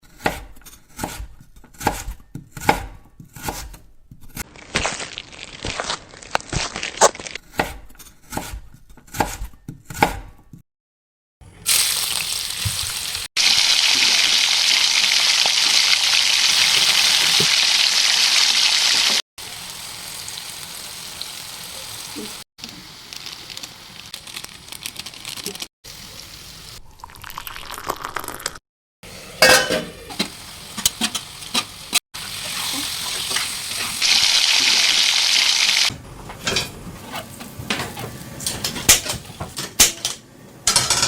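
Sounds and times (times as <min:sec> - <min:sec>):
food sizzling in hot oil: 0:11.6 - 0:24.7, 0:29.1 - 0:35.9.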